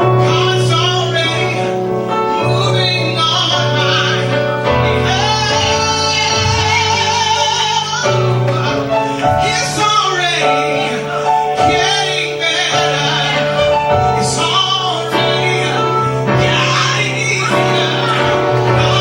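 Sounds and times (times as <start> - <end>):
gospel choir singing: 0.0 - 19.0.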